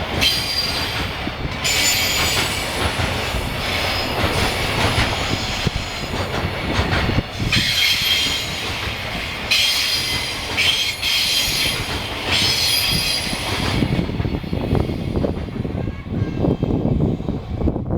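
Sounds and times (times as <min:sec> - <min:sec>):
freight train wagons rumbling: 0:00.0 - 0:17.9
high wheel squeal: 0:07.4 - 0:08.8, 0:09.5 - 0:13.8.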